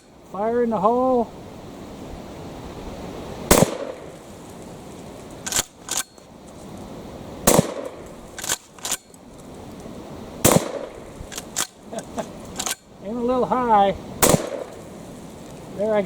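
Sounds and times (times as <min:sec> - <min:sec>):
wind rushing: 0:00.0 - 0:16.0
shotgun shots: 0:03.5 - 0:04.2, 0:07.4 - 0:09.1, 0:10.4 - 0:11.8, 0:14.2 - 0:14.8
shotgun pump clicks: 0:05.4 - 0:06.3, 0:07.5 - 0:09.9, 0:10.5 - 0:11.8, 0:12.5 - 0:12.8.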